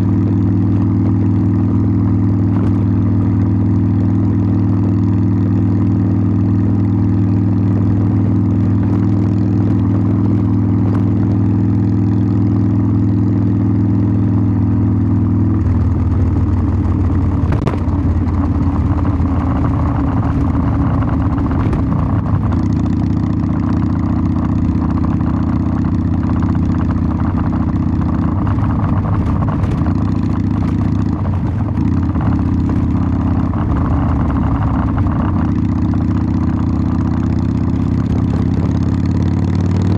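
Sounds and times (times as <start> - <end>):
motorcycle engine and exhaust: 0.0 - 39.9
wind noise: 15.6 - 23.6, 24.5 - 35.9, 37.6 - 39.0.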